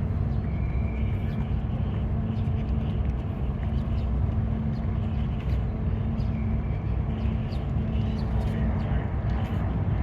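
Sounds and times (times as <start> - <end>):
ferry engine drone: 0.0 - 10.0.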